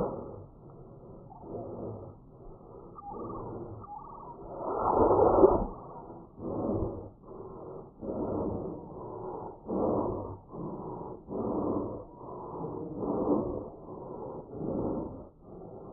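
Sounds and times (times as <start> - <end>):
dog breathing: 5.6 - 15.9.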